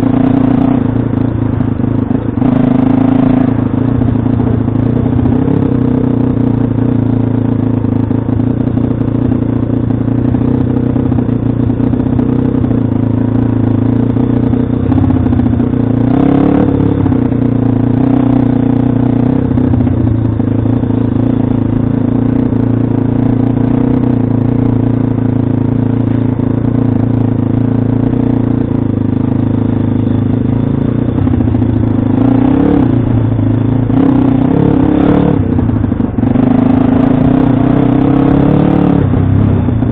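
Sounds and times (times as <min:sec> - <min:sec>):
motorbike engine running: 0:00.0 - 0:39.9
engine revving: 0:02.1 - 0:04.3, 0:14.8 - 0:19.8, 0:31.2 - 0:39.9.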